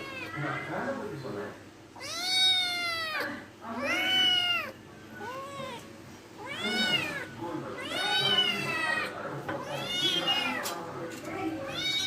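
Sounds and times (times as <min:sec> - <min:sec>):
cat meowing: 0:00.0 - 0:00.4, 0:02.0 - 0:10.7, 0:11.6 - 0:12.0.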